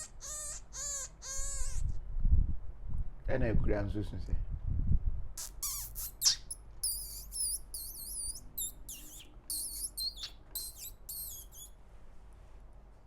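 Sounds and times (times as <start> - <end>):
man making high squeaks: 0.0 - 1.9, 5.4 - 11.7.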